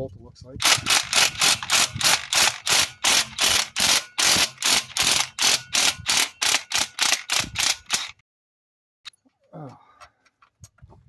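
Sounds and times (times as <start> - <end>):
ratchet wrench clicking: 0.6 - 8.2.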